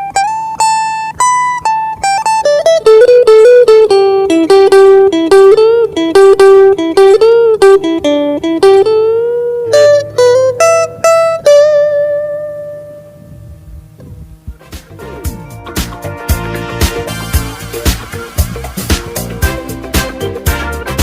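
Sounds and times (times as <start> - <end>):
guitar lead melody with bends: 0.0 - 21.0.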